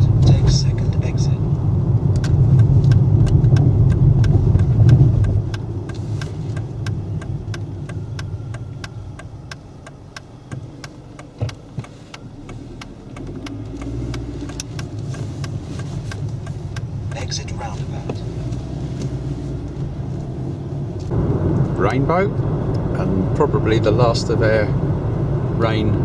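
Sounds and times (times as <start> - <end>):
car road and engine noise: 0.0 - 26.0
fast even ticking: 2.2 - 18.2.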